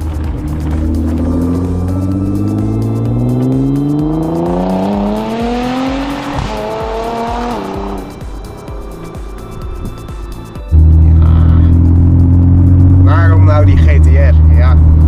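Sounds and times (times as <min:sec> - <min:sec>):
sports car accelerating past: 0:00.0 - 0:08.2.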